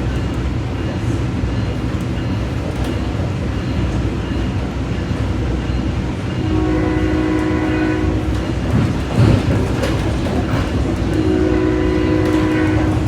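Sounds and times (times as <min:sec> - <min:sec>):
train rumbling along track: 0:00.0 - 0:13.0
train horn: 0:06.4 - 0:08.6, 0:11.0 - 0:13.0.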